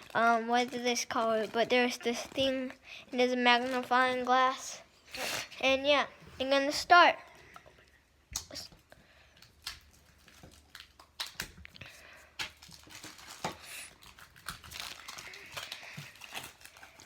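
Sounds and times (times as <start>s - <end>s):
packaging crinkling and rustling: 0.0s - 4.6s, 8.8s - 17.0s.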